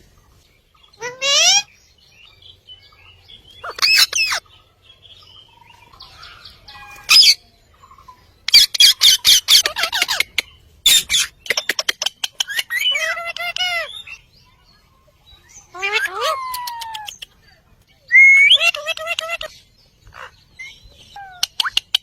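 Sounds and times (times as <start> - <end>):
parakeet warbling chatter: 1.0 - 1.7, 3.6 - 4.4, 8.5 - 14.0, 15.7 - 17.2, 18.2 - 19.5
parakeets squawking: 1.0 - 1.7, 3.6 - 4.4, 8.5 - 14.2, 15.6 - 17.2, 18.2 - 20.6, 21.2 - 21.8.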